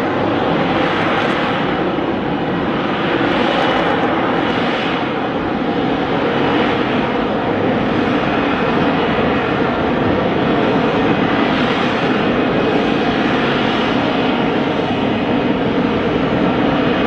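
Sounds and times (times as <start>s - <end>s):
loud steady jet engine noise: 0.0s - 17.0s.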